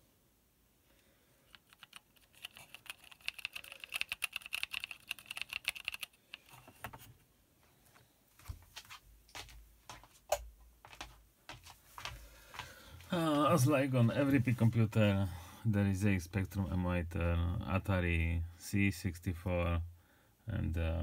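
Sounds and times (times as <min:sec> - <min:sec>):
mechanical keyboard key clicks: 0:01.6 - 0:06.1.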